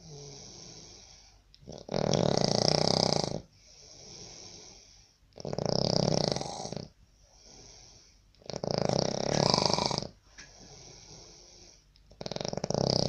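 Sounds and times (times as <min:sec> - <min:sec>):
person snoring: 0:05.4 - 0:10.2, 0:12.2 - 0:13.0.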